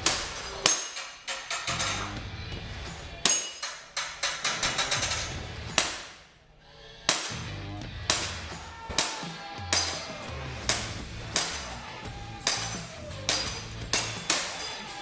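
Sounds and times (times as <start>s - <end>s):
metallic clanks on steel targets: 0.0s - 6.2s, 7.0s - 15.0s
background music with low beat: 1.7s - 3.2s, 7.4s - 15.0s.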